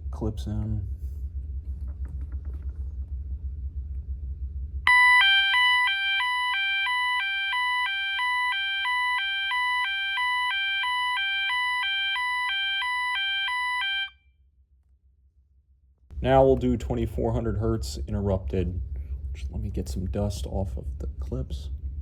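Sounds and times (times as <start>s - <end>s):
low hum: 0.0s - 14.1s
two-pitch fire alarm horn: 4.9s - 14.2s.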